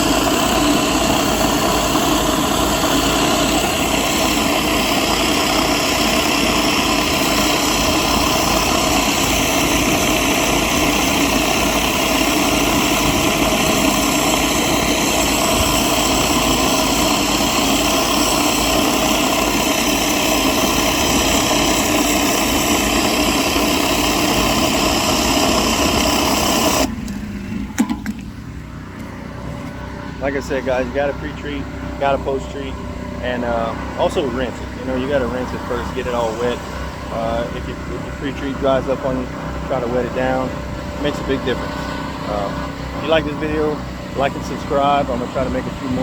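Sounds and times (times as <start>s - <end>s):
water spraying over concrete: 0.0s - 26.9s
pressure washer running: 0.0s - 46.0s.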